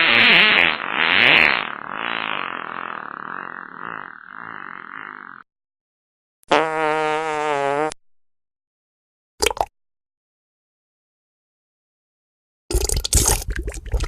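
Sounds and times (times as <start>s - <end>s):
fart sound effects: 0.0s - 5.5s, 6.5s - 8.0s.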